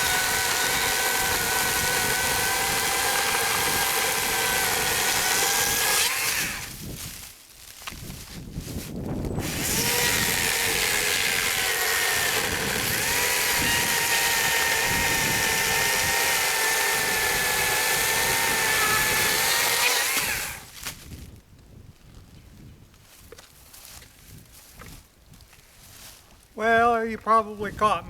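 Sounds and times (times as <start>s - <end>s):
electric chainsaw cutting wood: 0.0s - 6.8s, 9.4s - 20.7s.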